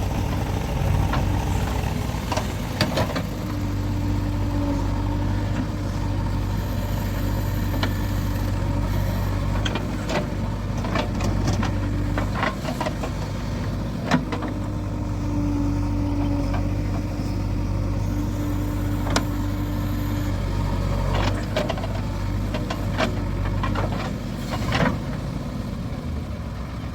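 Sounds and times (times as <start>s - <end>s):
backhoe diesel engine running: 0.0s - 26.9s.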